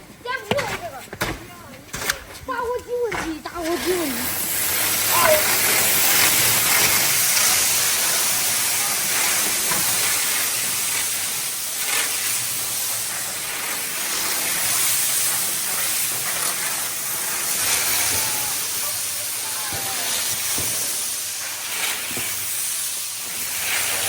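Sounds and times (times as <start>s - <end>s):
firework fountain hissing: 0.0s - 24.0s.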